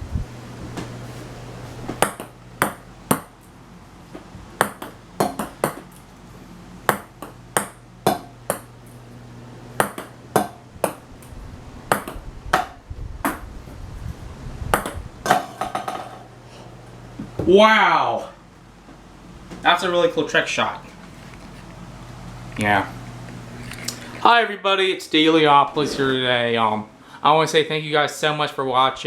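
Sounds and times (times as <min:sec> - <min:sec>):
low steady hum: 0:00.0 - 0:29.0
ping pong ball bouncing: 0:02.0 - 0:03.4, 0:04.6 - 0:05.9, 0:06.9 - 0:08.8, 0:09.8 - 0:11.0, 0:11.9 - 0:13.4, 0:14.7 - 0:16.3.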